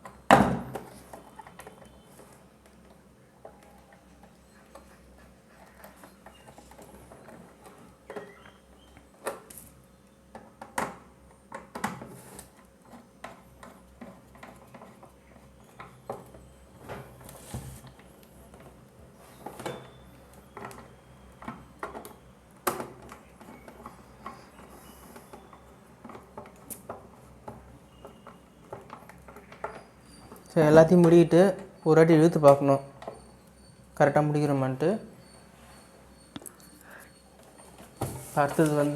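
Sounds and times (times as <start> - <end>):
hands handling electrical wiring: 36.3 - 38.9.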